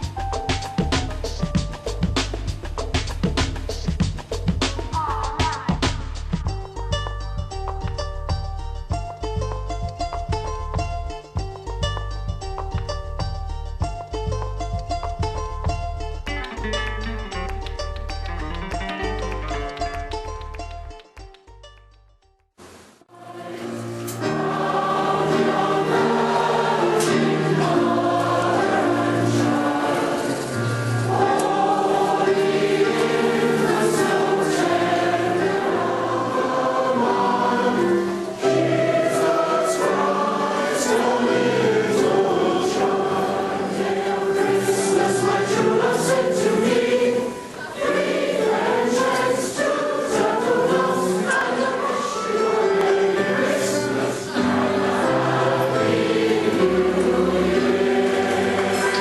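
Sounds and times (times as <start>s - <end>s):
choir singing: 23.1s - 59.0s.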